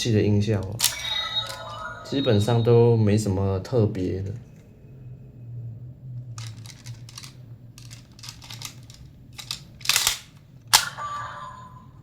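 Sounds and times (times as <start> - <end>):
faint steady hum: 0.0 - 12.0
plastic toy clicks and rattles: 6.4 - 11.0.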